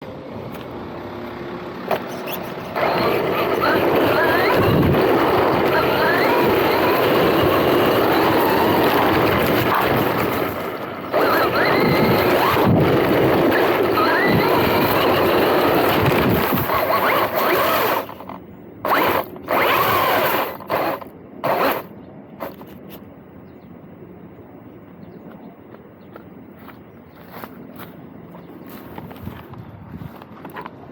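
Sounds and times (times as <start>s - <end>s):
drivetrain and tyre noise: 0.0s - 30.9s
rc car motor whine: 1.9s - 22.8s.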